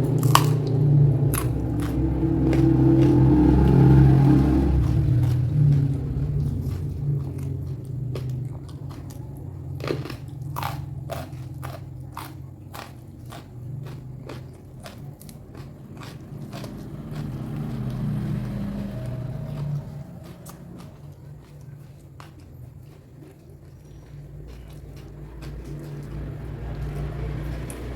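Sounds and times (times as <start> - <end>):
low hum: 0.0 - 22.2
person chewing crunchy food: 0.0 - 27.9.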